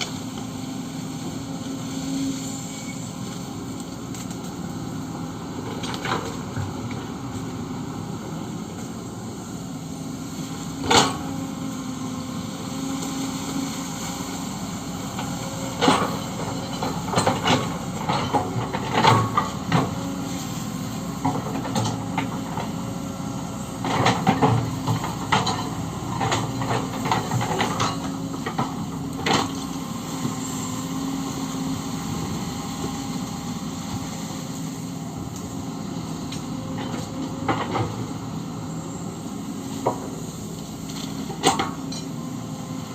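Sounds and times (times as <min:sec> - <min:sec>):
diesel engine running: 0:00.0 - 0:42.9.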